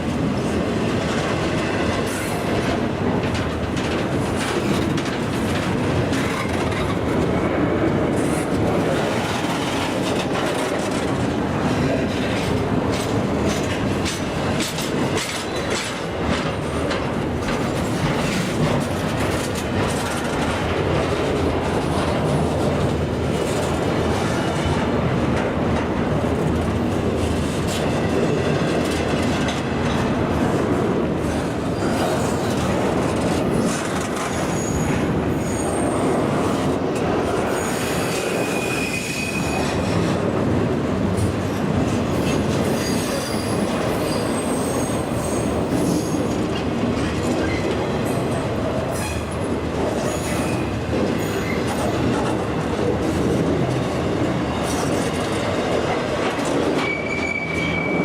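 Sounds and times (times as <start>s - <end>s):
freight train rolling on track: 0.0s - 58.0s
high-pitched wheel squeals: 56.8s - 58.0s.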